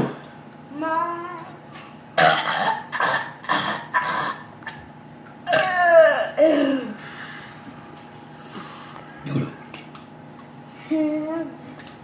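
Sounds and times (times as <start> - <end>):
person coughing: 2.2 - 4.5, 5.5 - 7.0.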